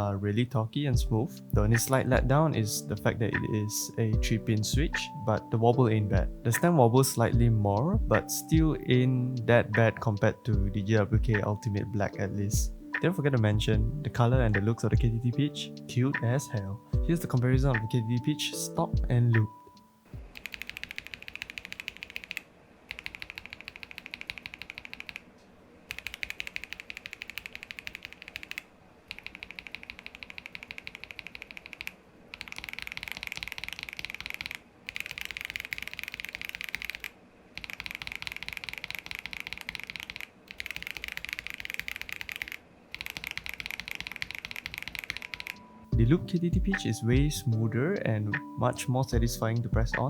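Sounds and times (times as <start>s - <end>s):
mechanical keyboard typing: 20.2s - 25.3s, 25.9s - 45.7s.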